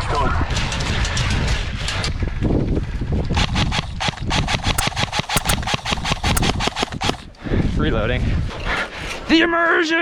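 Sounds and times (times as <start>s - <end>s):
airsoft guns firing full-auto: 4.8s - 7.2s.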